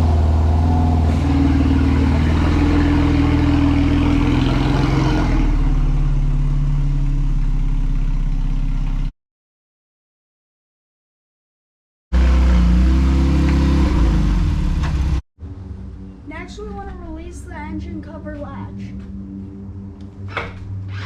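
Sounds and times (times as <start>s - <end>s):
car engine running while driving: 0.0s - 9.1s, 12.2s - 15.6s.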